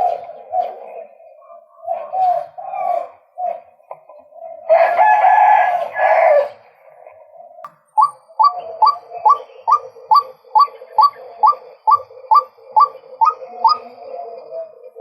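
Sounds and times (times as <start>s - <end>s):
waterhen calling: 7.7s - 15.0s.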